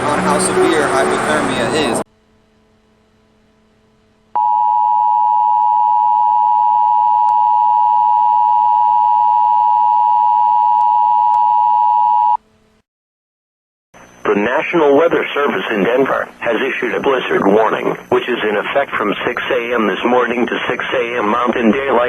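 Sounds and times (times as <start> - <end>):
loud steady electronic alert tone: 0.0 - 2.0.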